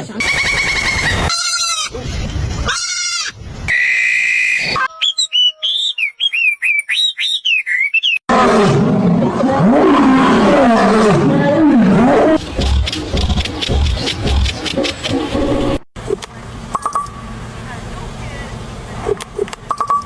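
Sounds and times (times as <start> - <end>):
high whistled chirps: 3.7 - 8.2
big cat roaring: 8.3 - 12.7.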